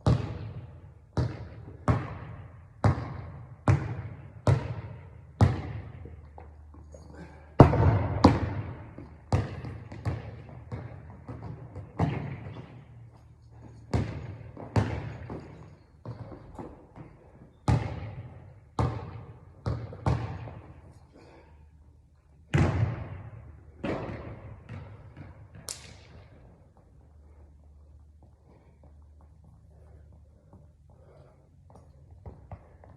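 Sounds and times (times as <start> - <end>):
basketball bouncing on court: 0.0 - 6.6, 7.2 - 13.0, 13.6 - 20.9, 22.4 - 26.5, 32.1 - 32.9.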